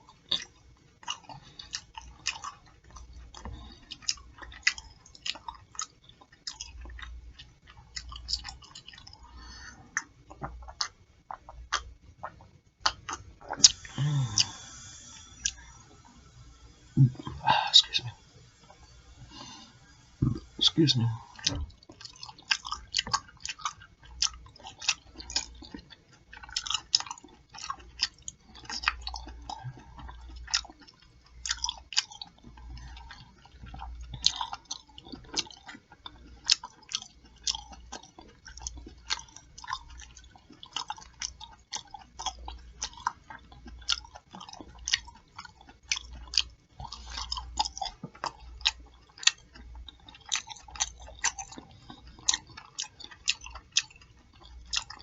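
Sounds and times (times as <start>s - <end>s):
open-mouthed chewing: 0.0s - 55.0s
wet lip-smacking clicks: 10.0s - 15.6s.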